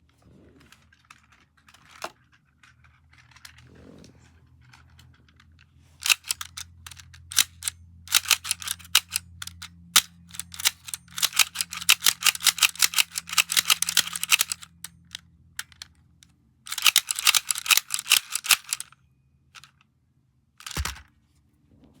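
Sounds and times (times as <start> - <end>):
fidget toy clicking: 6.0 - 15.9, 16.7 - 19.0, 19.6 - 19.8, 20.6 - 21.0.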